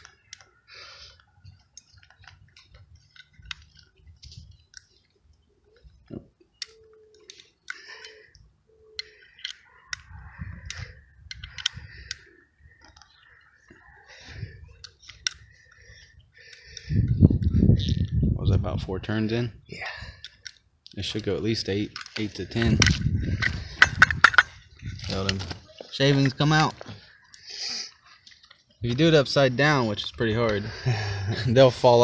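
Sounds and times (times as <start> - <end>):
tap wrench clicks and creaks: 0.0 - 0.5, 1.1 - 4.9, 9.0 - 13.1, 14.8 - 18.0.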